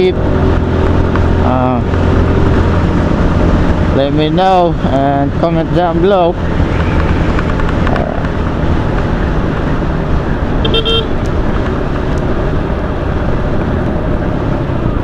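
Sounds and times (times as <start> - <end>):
wind and road noise: 0.0 - 15.0
vehicle horn toot: 10.6 - 11.2.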